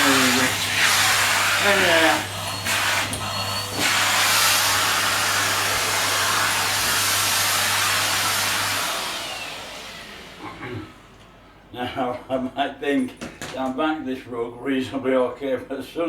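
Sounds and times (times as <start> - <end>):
vacuum cleaner running: 0.0 - 11.4.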